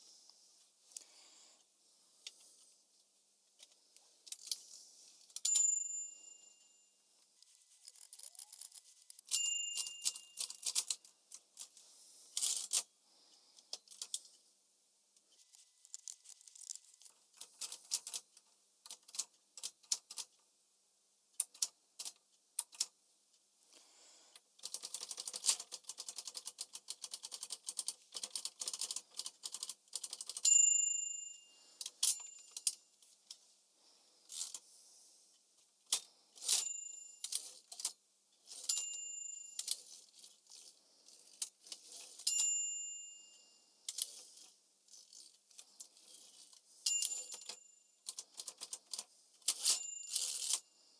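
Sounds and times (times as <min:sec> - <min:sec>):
typewriter carriage bell ringing: 0:07.5 - 0:10.8, 0:46.9 - 0:47.8, 0:49.6 - 0:50.6.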